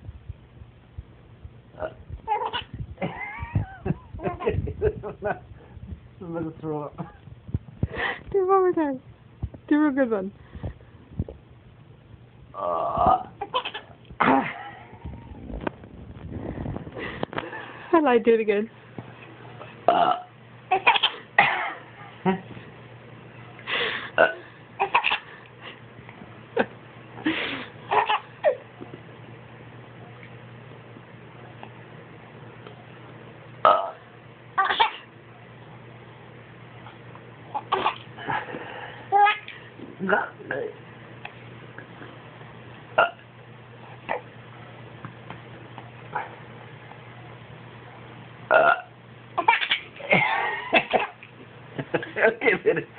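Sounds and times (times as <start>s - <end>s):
baby giggling: 2.3s - 4.6s, 13.4s - 13.9s, 27.9s - 28.6s, 49.4s - 51.2s
man burping: 12.6s - 13.4s, 19.9s - 20.3s, 24.2s - 24.5s, 33.6s - 34.0s, 40.0s - 40.8s, 43.0s - 43.2s, 48.5s - 48.9s.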